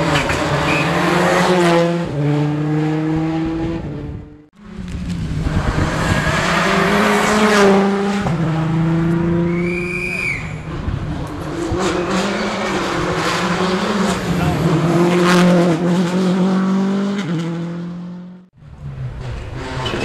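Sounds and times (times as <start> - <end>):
rally car engine at full throttle: 0.0 - 9.8, 10.4 - 20.0
tyre squeal: 0.6 - 1.0, 9.5 - 10.7.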